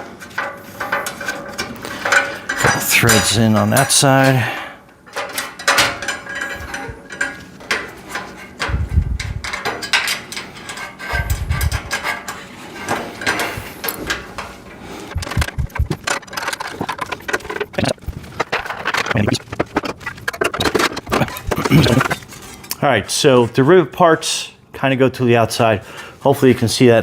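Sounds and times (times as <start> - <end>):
metal parts and screws rattling: 0.0 - 23.6
dull thumps: 15.2 - 22.2.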